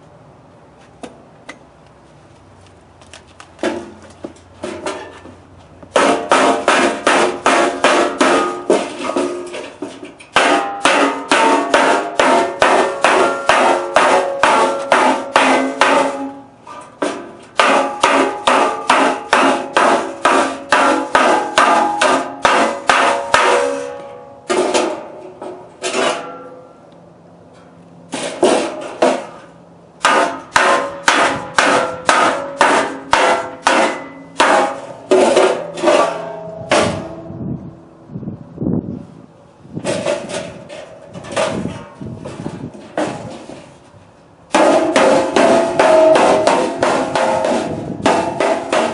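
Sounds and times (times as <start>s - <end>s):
hammer striking sheet metal: 5.9s - 26.8s, 28.1s - 37.3s, 39.8s - 43.7s, 44.5s - 48.9s.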